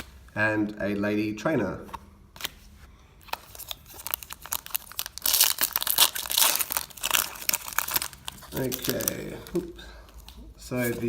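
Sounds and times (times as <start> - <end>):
foil wrapper tearing and crinkling: 3.3 - 9.6.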